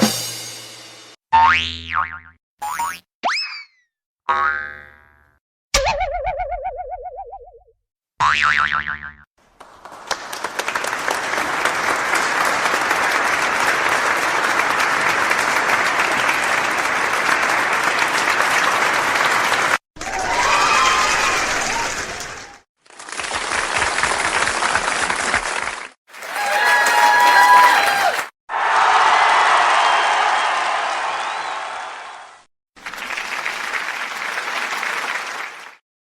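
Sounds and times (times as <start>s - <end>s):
crowd clapping: 9.4s - 35.8s.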